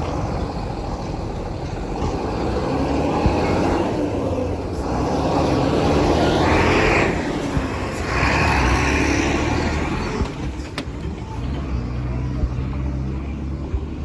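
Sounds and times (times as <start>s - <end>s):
engine hum: 0.0s - 14.0s
vehicles passing: 0.0s - 14.0s.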